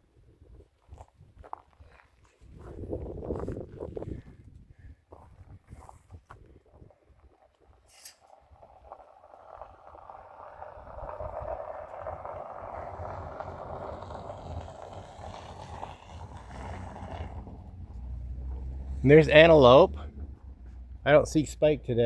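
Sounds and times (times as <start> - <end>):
vehicle rumble and road noise: 6.3 - 22.0.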